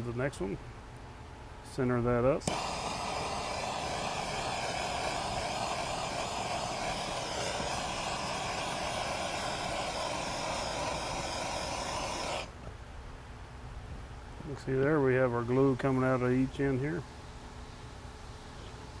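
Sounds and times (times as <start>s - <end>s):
torch flame hissing: 2.4s - 12.6s.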